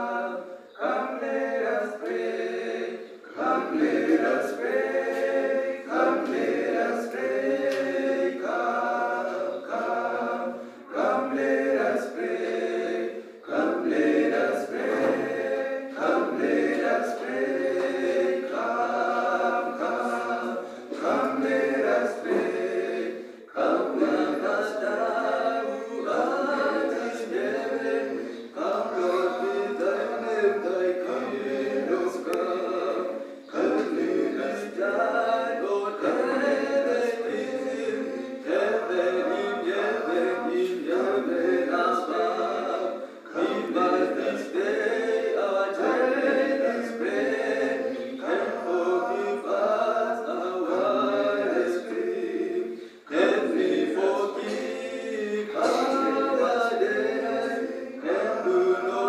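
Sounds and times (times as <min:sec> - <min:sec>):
choir singing a cappella: 0:00.0 - 0:59.0
singers breathing: 0:10.5 - 0:10.9, 0:20.6 - 0:20.9, 0:23.1 - 0:23.5, 0:33.2 - 0:33.5, 0:43.0 - 0:43.3, 0:52.6 - 0:53.1.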